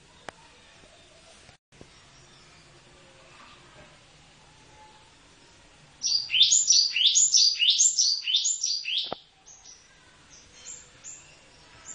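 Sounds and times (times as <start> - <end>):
faint high chirps: 4.4 - 11.9
bird whistling descending notes: 6.0 - 9.2.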